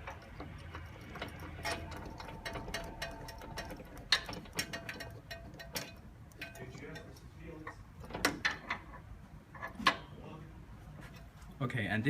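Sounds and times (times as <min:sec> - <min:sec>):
ratcheting hand tool clicking: 0:00.0 - 0:07.2
metal parts knocking: 0:00.0 - 0:10.1.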